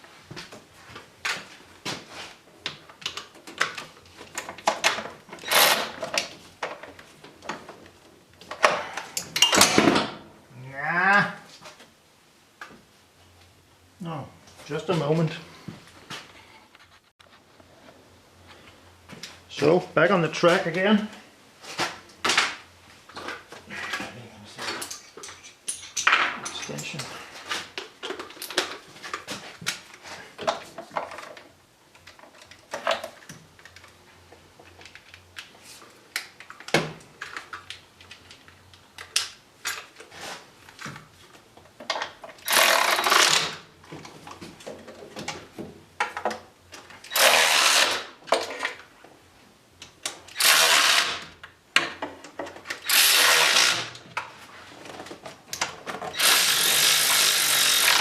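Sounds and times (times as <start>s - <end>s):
power tool bursts: 42.4s - 43.6s, 47.1s - 48.1s, 50.4s - 51.3s, 52.8s - 54.0s, 56.1s - 58.0s.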